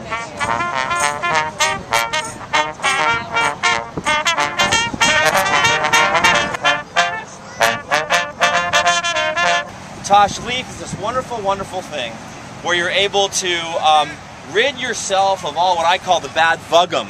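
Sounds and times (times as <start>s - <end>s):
brass instruments playing quick notes: 0.0s - 9.8s.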